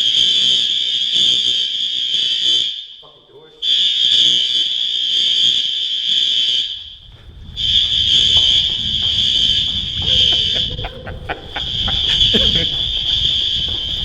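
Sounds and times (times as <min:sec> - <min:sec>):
fire alarm high-pitched tone: 0:00.0 - 0:14.0
low rumble: 0:06.8 - 0:14.0.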